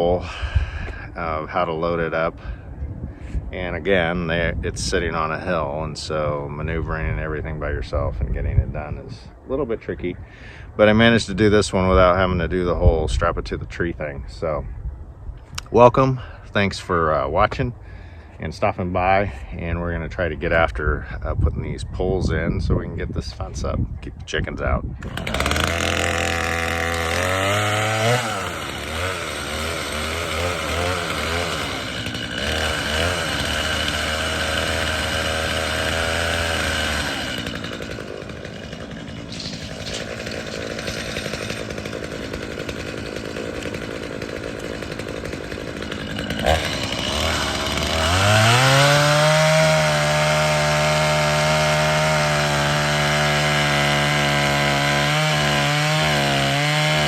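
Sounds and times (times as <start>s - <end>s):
tractor diesel engine revving: 25.0s - 57.0s.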